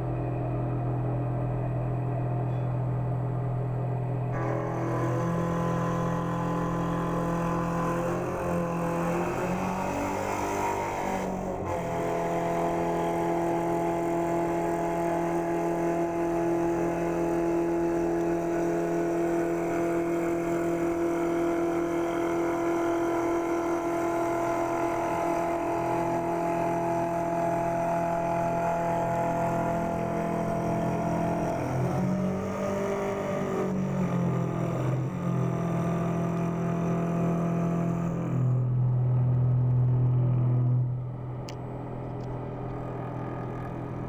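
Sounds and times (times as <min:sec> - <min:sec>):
lathe motor whining: 0:11.0 - 0:38.2.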